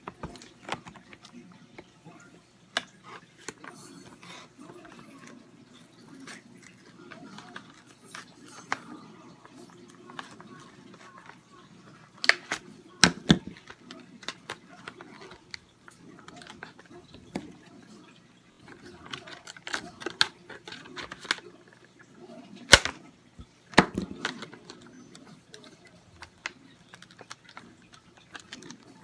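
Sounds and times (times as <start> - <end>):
plastic packaging crackling: 4.7 - 22.0, 23.8 - 29.0
sharp plastic snaps: 22.7 - 23.0.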